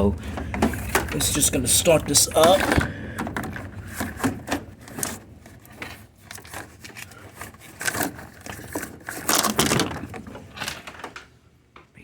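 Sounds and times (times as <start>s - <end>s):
dehumidifier being moved: 0.0s - 11.3s
scraping and rustling: 0.2s - 11.2s.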